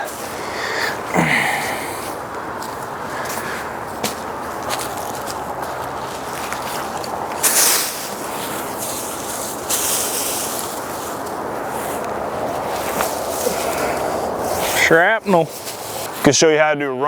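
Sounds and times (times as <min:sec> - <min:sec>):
microphone handling rustle: 0:02.0 - 0:16.3
scraping hisses: 0:07.4 - 0:16.3.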